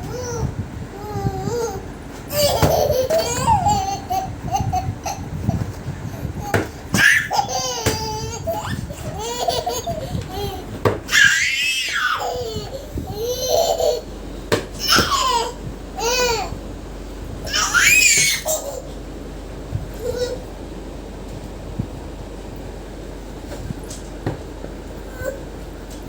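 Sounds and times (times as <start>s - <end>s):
baby laughing: 0.0s - 5.6s, 6.3s - 14.1s, 14.8s - 16.6s, 17.5s - 18.9s.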